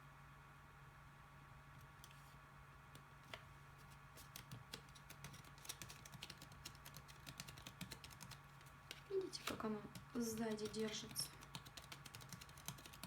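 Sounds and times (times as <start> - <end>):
low steady hum: 0.0 - 13.0
paper clicks and crackles: 3.2 - 13.0.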